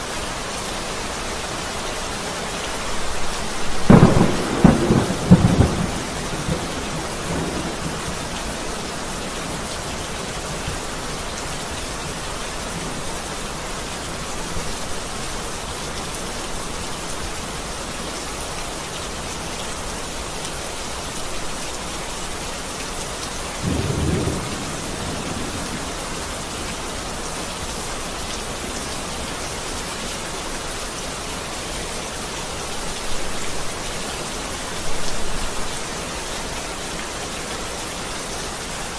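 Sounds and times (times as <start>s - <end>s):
steady rain falling: 0.0s - 38.9s
thunder rumbles: 3.6s - 9.6s, 23.6s - 27.2s.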